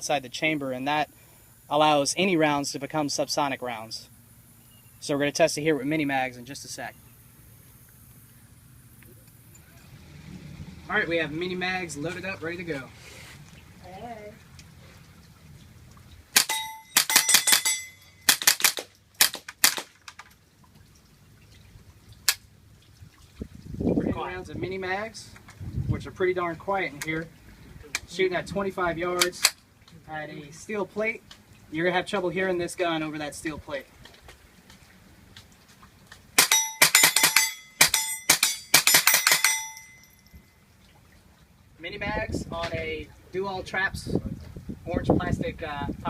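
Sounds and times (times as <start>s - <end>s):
steel plate ringing: 16.4s - 18.5s, 36.4s - 40.5s
suppressed rifle shots: 16.4s - 20.0s, 36.4s - 39.7s.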